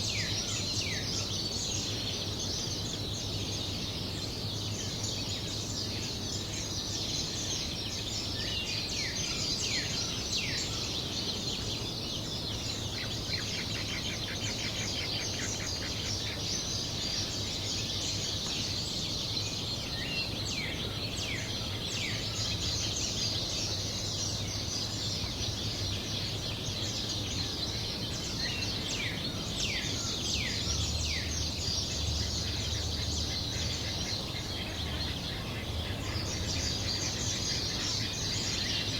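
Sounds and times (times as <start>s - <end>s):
small birds chirping and singing: 0.0s - 38.9s.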